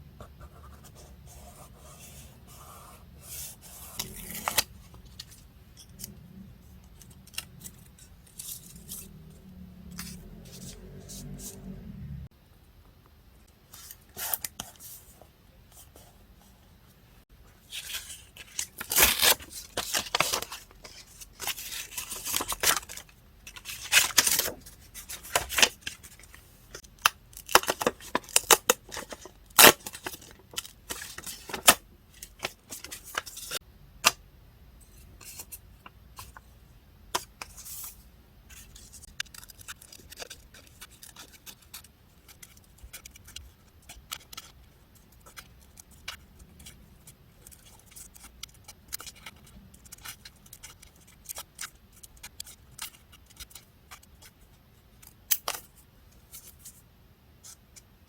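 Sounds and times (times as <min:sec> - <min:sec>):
paper being torn: 0:03.8 - 0:04.7.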